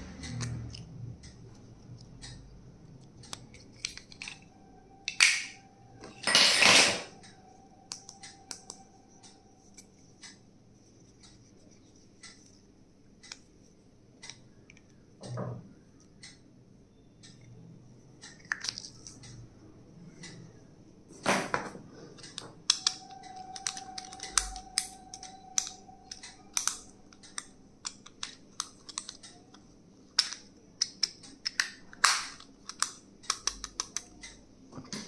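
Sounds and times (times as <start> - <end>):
faint steady tone: 1.0 - 6.2, 7.1 - 18.2, 21.9 - 27.8.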